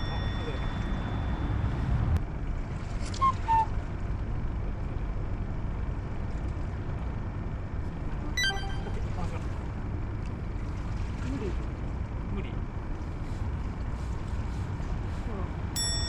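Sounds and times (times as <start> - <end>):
brief ringing tone: 8.4 - 9.2
short high beeps: 8.4 - 9.2.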